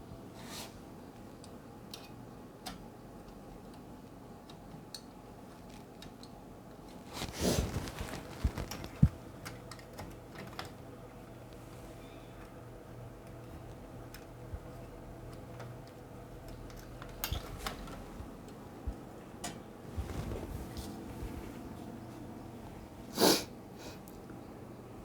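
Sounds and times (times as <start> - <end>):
rustling: 7.0 - 9.2, 19.9 - 21.8.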